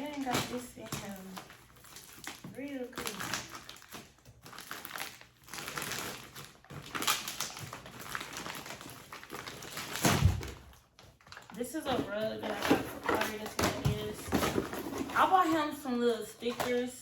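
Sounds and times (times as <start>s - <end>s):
package tearing and crinkling: 0.0s - 11.6s.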